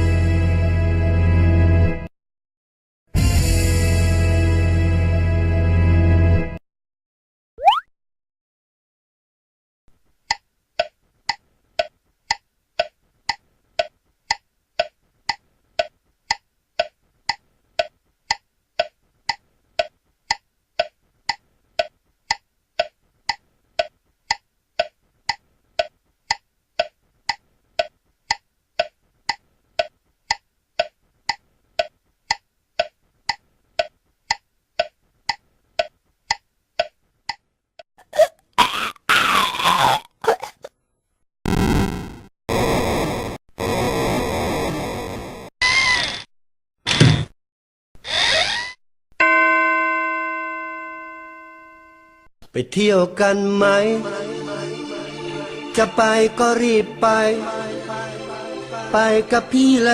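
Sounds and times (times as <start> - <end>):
clock ticking: 10.2 - 37.4.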